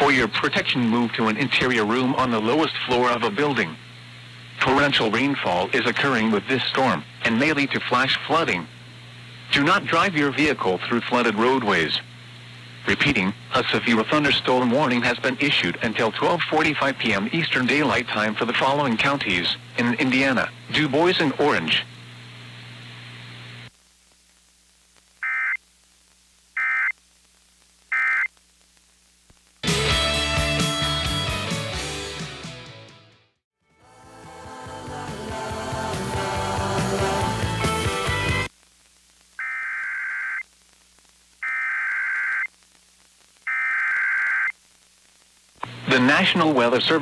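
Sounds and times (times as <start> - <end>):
radio hiss: 0.0 - 29.7, 37.0 - 47.0
shrill digital data tones: 27.9 - 28.3, 39.4 - 40.4, 41.4 - 42.5, 43.5 - 44.5
music: 29.6 - 38.5.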